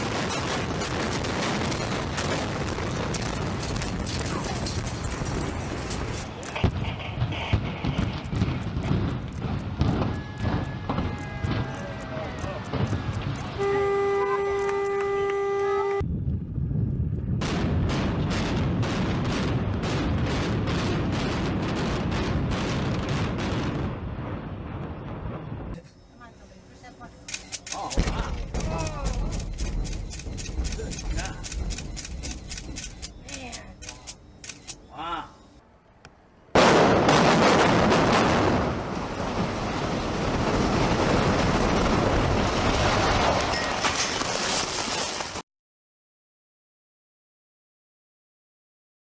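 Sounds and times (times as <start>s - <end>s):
demolition charge cracks: 0.0s - 13.6s, 36.6s - 45.4s
building collapsing roar: 36.6s - 44.8s.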